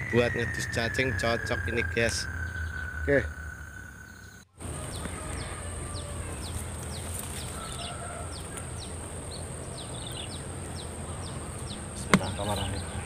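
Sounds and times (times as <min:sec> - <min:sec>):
low rumble: 0:00.0 - 0:04.9
bird chirping: 0:00.0 - 0:13.0
insect drone: 0:00.0 - 0:13.0.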